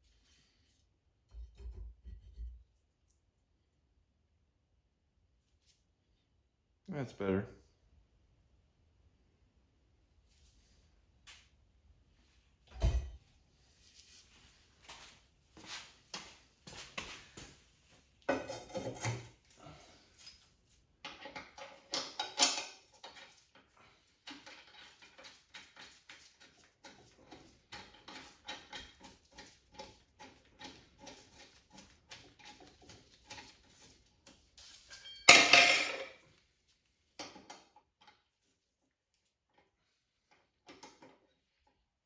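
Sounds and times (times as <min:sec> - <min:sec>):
metal hand tools clinking: 0:34.7 - 0:36.2.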